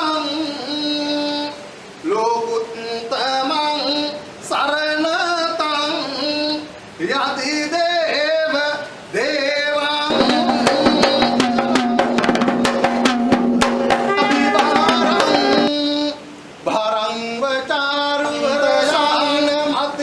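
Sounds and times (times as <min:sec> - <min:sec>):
voices singing a chant: 0:00.0 - 0:20.0
quick dense drumming: 0:10.1 - 0:15.8.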